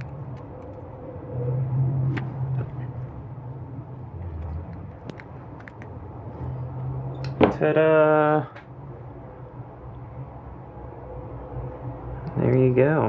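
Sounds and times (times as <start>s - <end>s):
tool clicking and scraping metal: 0.0s - 0.9s, 4.4s - 5.9s
steady low hum: 0.0s - 7.3s.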